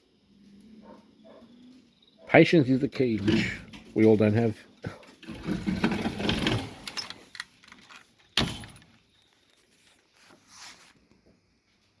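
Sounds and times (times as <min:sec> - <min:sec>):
rattling and clinking handling: 0:04.9 - 0:09.0.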